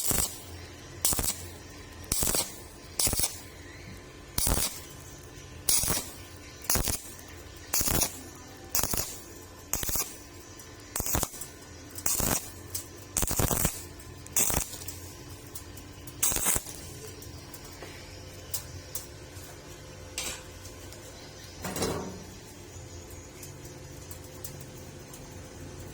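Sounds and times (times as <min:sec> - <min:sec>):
welding arc crackling: 0:00.0 - 0:19.4.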